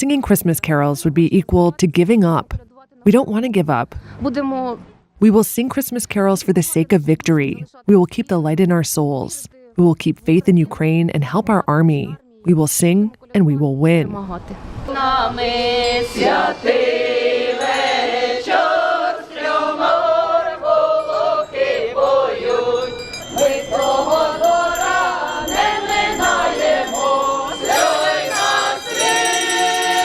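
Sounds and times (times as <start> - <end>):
choir singing a carol: 14.9 - 30.0
high bell-like ringing: 17.4 - 18.6, 20.9 - 30.0.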